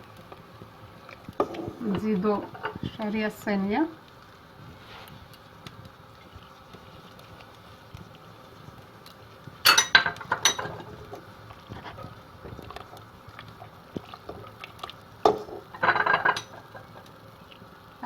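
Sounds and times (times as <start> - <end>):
faint steady hiss: 0.0 - 18.0
spoon knocking on cooking pot: 9.7 - 10.8, 15.3 - 16.6.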